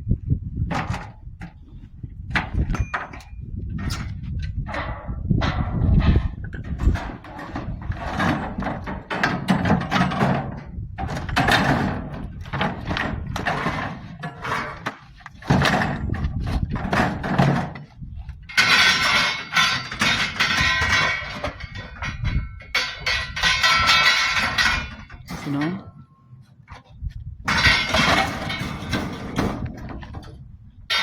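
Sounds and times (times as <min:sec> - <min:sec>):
scrap metal knocking and clanking: 0:02.3 - 0:31.0
metallic rattling and ringing: 0:02.7 - 0:03.5.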